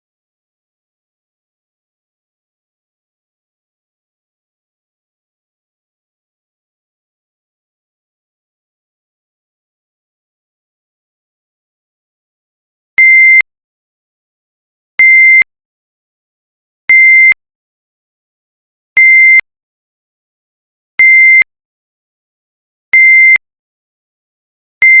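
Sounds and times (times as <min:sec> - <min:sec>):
timer alarm beeps: 0:13.0 - 0:13.4, 0:15.0 - 0:15.5, 0:16.9 - 0:17.4, 0:19.0 - 0:19.4, 0:21.0 - 0:21.5, 0:23.0 - 0:23.4.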